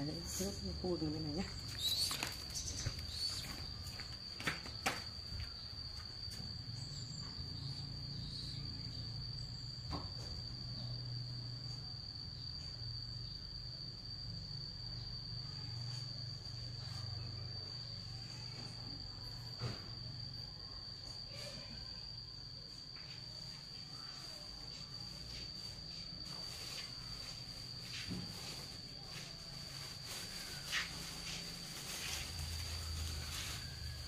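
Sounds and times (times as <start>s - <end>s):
insect trilling: 0.0s - 4.1s, 5.2s - 9.7s, 20.2s - 34.0s.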